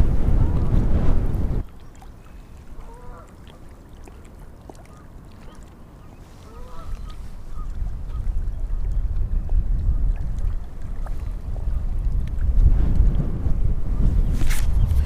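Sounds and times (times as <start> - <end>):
wind buffeting microphone: 0.0 - 1.8, 6.0 - 15.0
geese honking: 2.8 - 3.3, 6.4 - 7.7.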